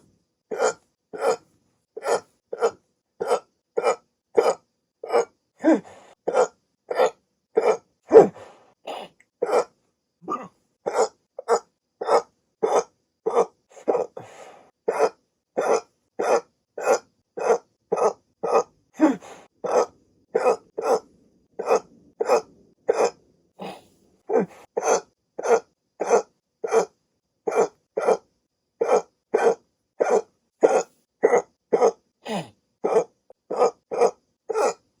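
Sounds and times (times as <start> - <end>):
person hiccuping: 3.8 - 9.6, 10.2 - 14.2, 18.0 - 20.6, 21.6 - 26.9, 28.8 - 34.8
faint breath: 5.6 - 6.3, 8.3 - 8.8, 13.7 - 14.8, 19.0 - 19.6, 23.6 - 24.7.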